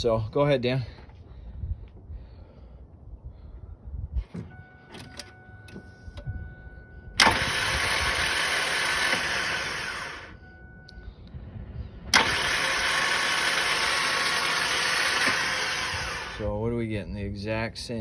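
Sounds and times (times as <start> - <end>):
starter motor humming: 4.8 - 10.9, 12.0 - 16.4.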